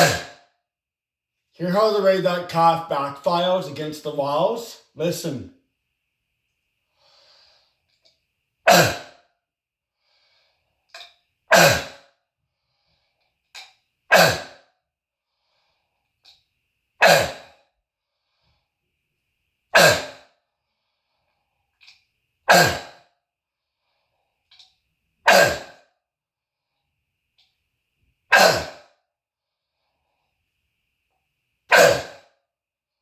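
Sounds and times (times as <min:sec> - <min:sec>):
faint short breaths: 0:06.9 - 0:08.0
man's barking cough: 0:22.5 - 0:22.9, 0:25.3 - 0:25.8, 0:28.3 - 0:28.8, 0:31.7 - 0:32.2.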